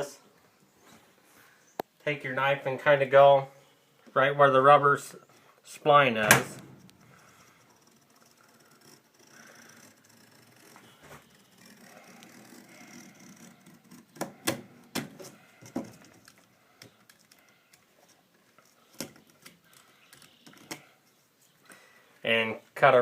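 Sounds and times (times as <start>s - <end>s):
knife scratching mesh: 7.0s - 14.5s.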